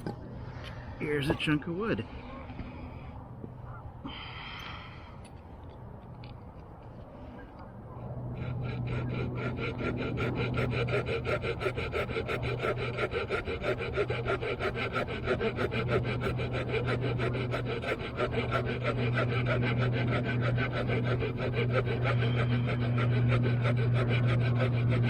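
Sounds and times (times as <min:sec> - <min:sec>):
steady low hum: 0:00.0 - 0:25.0
saw rasping through wood: 0:01.0 - 0:02.0, 0:08.0 - 0:25.0.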